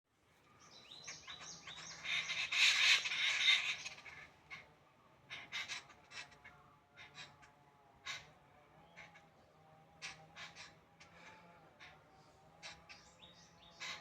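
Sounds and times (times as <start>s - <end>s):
small birds chirping: 0.6s - 4.2s, 12.7s - 14.0s.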